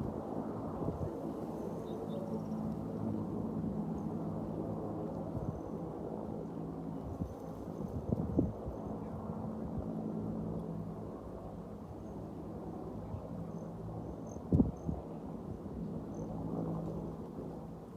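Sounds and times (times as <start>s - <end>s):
faint cricket chirps: 13.4s - 15.0s, 16.1s - 16.4s.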